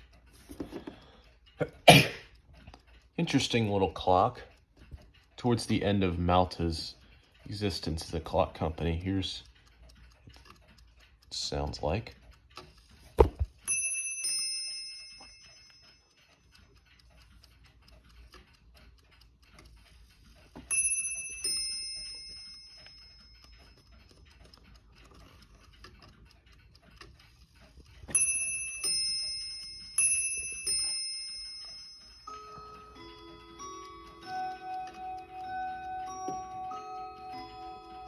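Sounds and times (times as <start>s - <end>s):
mantel clock ticking: 0.0s - 38.0s
clock bells striking high then low: 28.1s - 38.0s.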